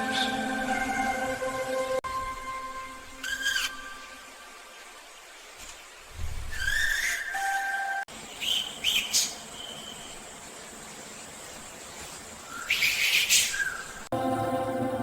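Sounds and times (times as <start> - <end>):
soft music: 0.0 - 5.2, 7.4 - 8.1, 14.1 - 15.0
forest ambience hiss: 1.6 - 14.1
bird chirps: 6.5 - 10.2.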